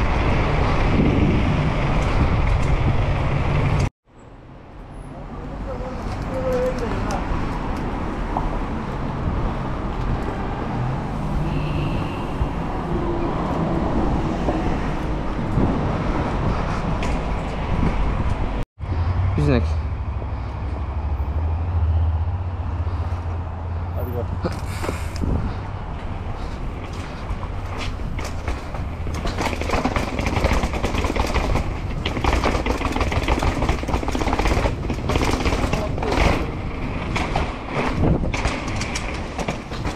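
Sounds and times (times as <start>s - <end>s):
wind on microphone: 0.0s - 3.8s, 7.2s - 20.9s, 21.9s - 32.1s, 33.2s - 39.9s
bike chain and frame rattling: 26.4s - 39.9s.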